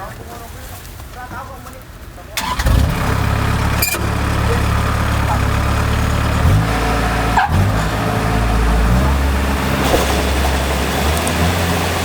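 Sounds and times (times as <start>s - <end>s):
diesel engine running: 2.4s - 12.0s.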